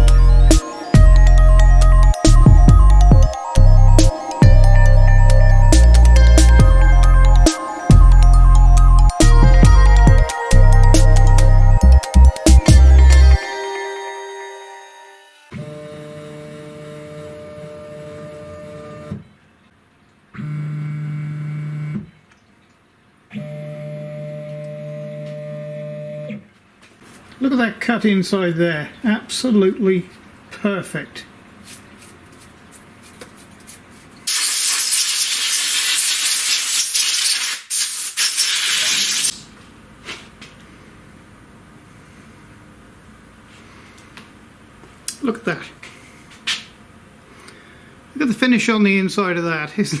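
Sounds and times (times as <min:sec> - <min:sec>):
compressed-air blow gun hissing: 0:34.3 - 0:39.4.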